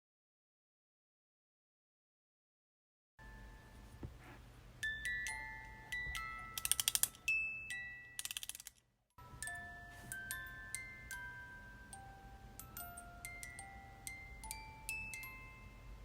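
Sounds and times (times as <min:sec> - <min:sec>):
music box melody: 0:03.2 - 0:03.9, 0:04.8 - 0:16.0
mechanical clicking: 0:06.6 - 0:07.2, 0:08.2 - 0:08.8.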